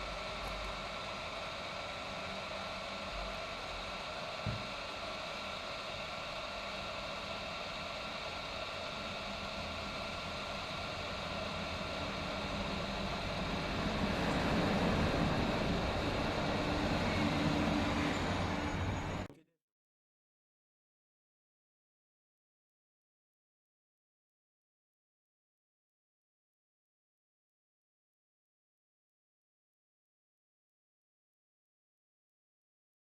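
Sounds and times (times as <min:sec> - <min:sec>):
hot air station blowing: 0:00.0 - 0:19.3.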